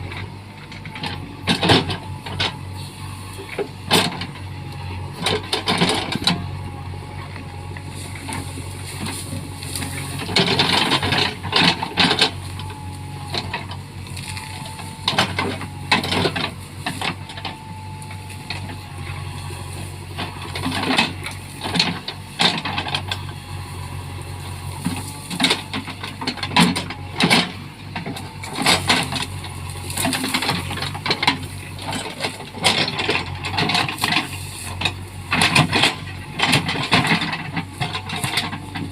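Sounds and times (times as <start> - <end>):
diesel engine running: 0.0 - 38.9
trees cracking and crashing: 28.2 - 38.9.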